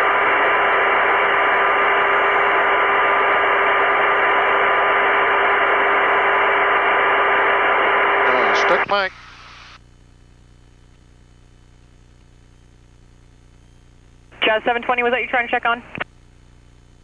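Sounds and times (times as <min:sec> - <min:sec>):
radio hiss: 0:00.0 - 0:09.8, 0:14.4 - 0:16.1
faint steady tones: 0:14.3 - 0:16.0.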